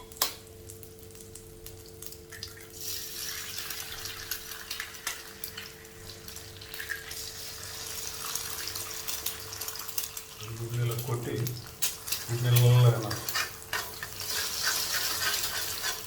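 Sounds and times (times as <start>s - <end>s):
eggs sizzling in a frying pan: 0.0s - 16.0s.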